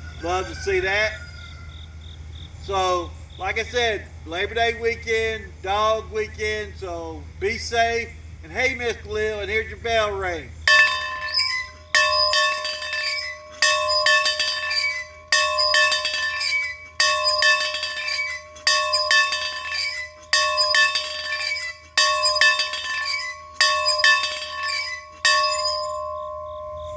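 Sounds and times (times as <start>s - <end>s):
bell ringing: 10.7s - 26.9s.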